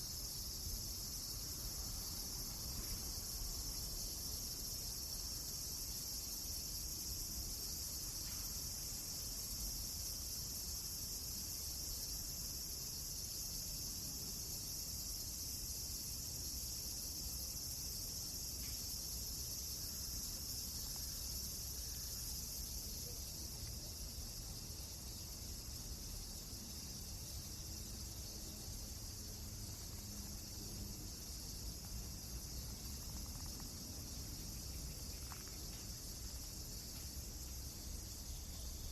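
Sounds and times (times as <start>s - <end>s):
crickets chirping: 0.0s - 38.9s
faint ticks: 36.9s - 37.6s.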